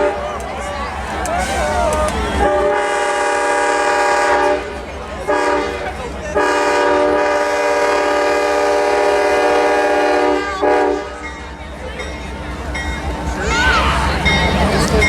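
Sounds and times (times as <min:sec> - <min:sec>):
locomotive air horn blasts: 0:01.4 - 0:05.8, 0:06.4 - 0:11.2.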